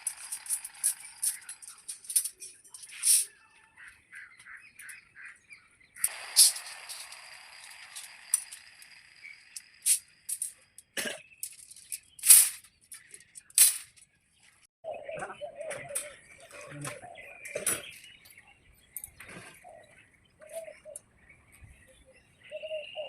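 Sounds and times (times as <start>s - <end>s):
wire scraping: 0.0s - 3.4s.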